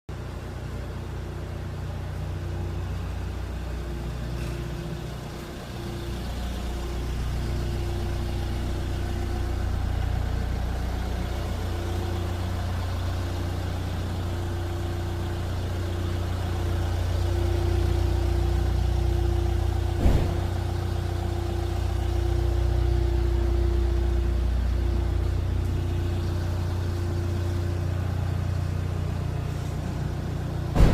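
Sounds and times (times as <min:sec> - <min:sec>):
sharp knock: 0:20.0 - 0:20.5.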